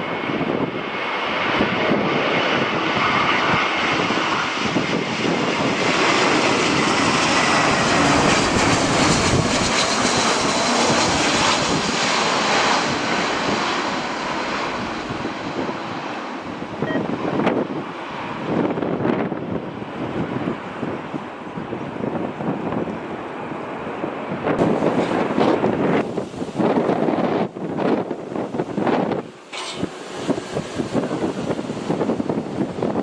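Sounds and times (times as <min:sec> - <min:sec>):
jet engines rushing: 0:00.0 - 0:33.0.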